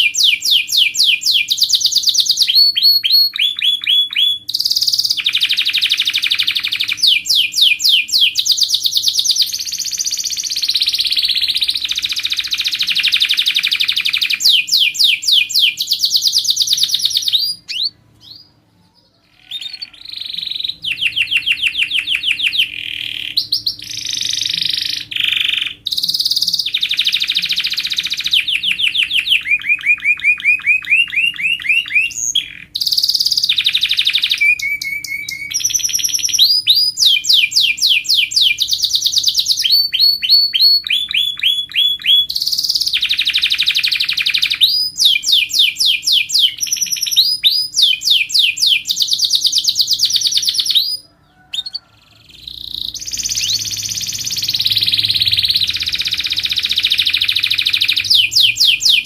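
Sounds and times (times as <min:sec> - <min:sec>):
canary singing fast trills: 0:00.0 - 0:59.0.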